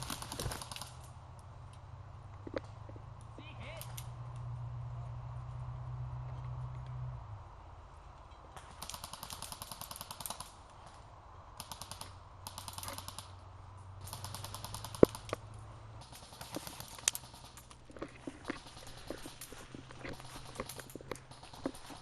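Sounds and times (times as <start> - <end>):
airsoft guns firing bursts: 0.0 - 1.1, 8.7 - 10.6, 11.6 - 13.4, 14.0 - 15.3, 16.0 - 17.8, 18.4 - 22.0.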